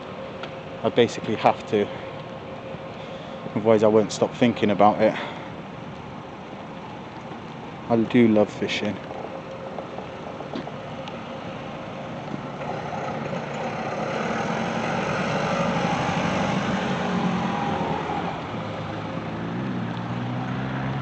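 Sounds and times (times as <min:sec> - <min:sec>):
vehicle engine passing by: 0:08.0 - 0:21.0.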